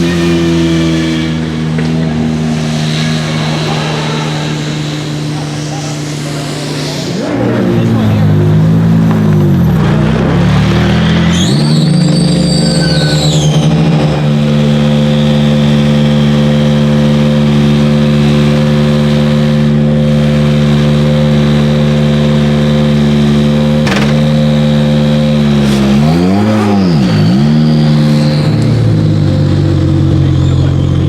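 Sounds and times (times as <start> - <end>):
car engine running: 0.0 - 31.0
sharp click: 23.8 - 24.3.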